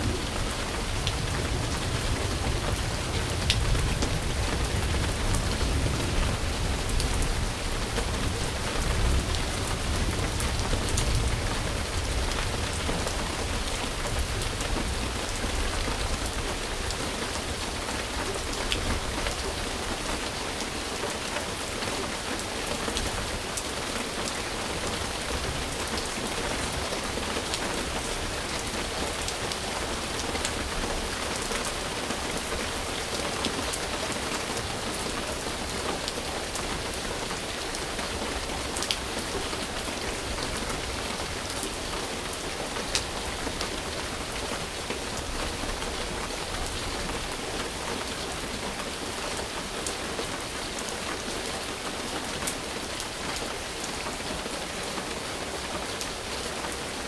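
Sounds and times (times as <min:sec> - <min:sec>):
rain pattering: 0:00.0 - 0:57.0.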